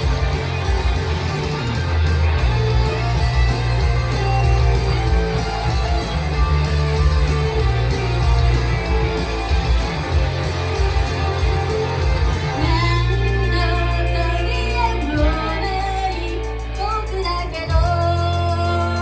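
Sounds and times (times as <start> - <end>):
rock song with loud guitar: 0.0 - 19.0
woman singing: 12.6 - 19.0.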